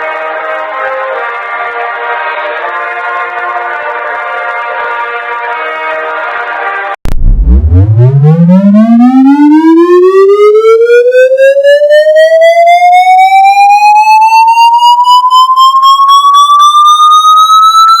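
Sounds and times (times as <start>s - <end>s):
rising electronic siren tone: 7.1s - 18.0s.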